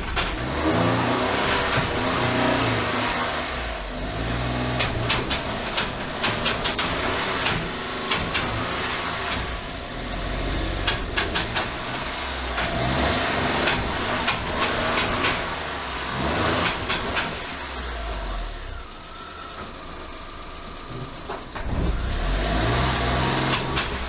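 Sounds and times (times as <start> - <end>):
sharp clicks and knocks: 0.0 - 3.2, 4.6 - 17.8, 22.9 - 24.0
small van engine running: 0.0 - 24.0.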